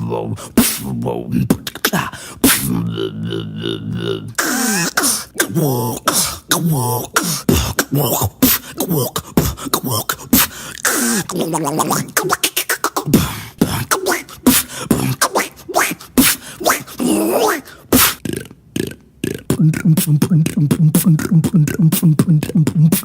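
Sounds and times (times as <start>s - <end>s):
sliding vocal tones: 0.0s - 23.0s
beatboxing mouth clicks and pops: 1.4s - 2.8s, 4.3s - 23.0s
mouth hissing: 4.4s - 18.4s.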